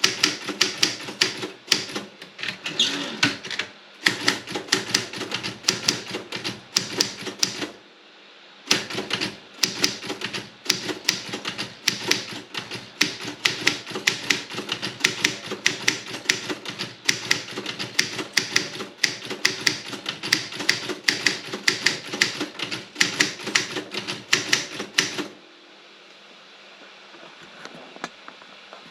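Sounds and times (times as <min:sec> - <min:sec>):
typewriter key strikes: 0:04.0 - 0:07.7, 0:08.7 - 0:25.3.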